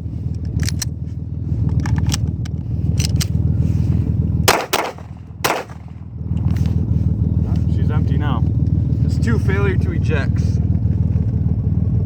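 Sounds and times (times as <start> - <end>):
steady low rumble: 0.0 - 12.0
pistol shots: 4.5 - 5.9.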